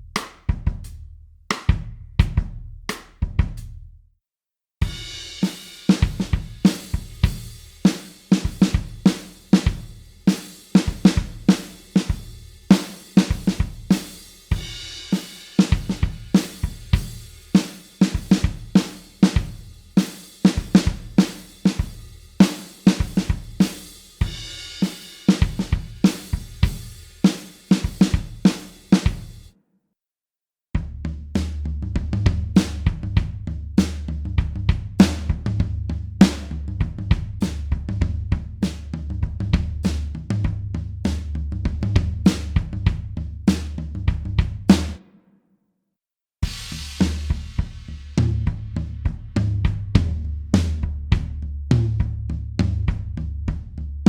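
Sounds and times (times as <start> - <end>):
rock drum kit groove: 0.0 - 3.8, 4.8 - 29.5, 30.8 - 45.1, 46.4 - 53.9.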